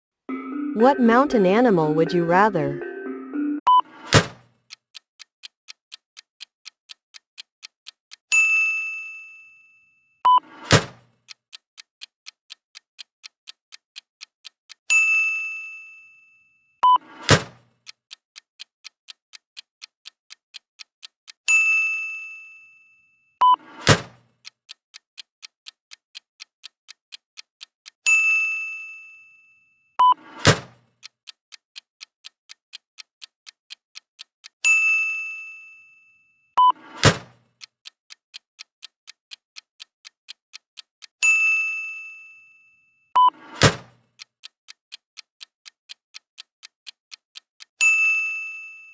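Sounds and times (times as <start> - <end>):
clock ticking: 0.3 - 8.5, 10.3 - 15.2, 16.8 - 21.8, 23.4 - 28.4, 30.0 - 35.0, 36.6 - 41.6, 43.2 - 48.3
two-tone beep: 16.8 - 17.0, 30.0 - 30.2, 36.6 - 36.8, 43.2 - 43.4.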